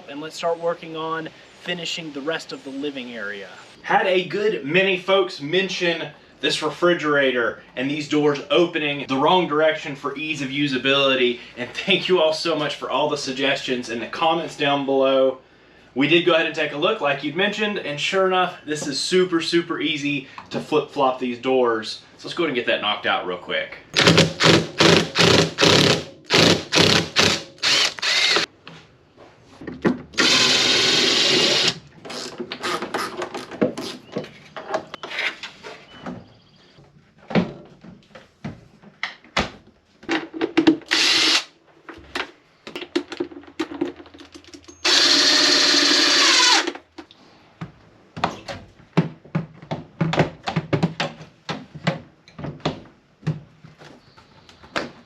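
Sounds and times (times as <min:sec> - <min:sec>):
power drill whirring: 0:24.0 - 0:28.5, 0:30.2 - 0:32.2, 0:40.9 - 0:41.5, 0:44.8 - 0:46.8.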